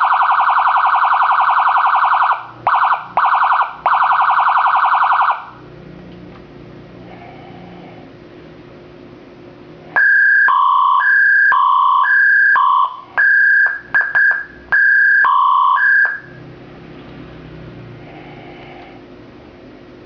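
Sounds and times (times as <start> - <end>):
short siren blips: 0.0 - 5.6, 10.0 - 16.4
two-tone police siren: 0.0 - 5.6, 10.0 - 16.4.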